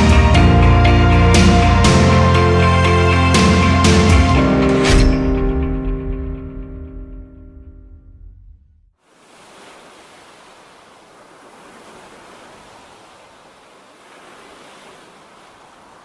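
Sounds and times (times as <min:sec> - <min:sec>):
background music: 0:00.0 - 0:08.0
small waves on shore: 0:09.0 - 0:16.0
wind: 0:09.0 - 0:16.0.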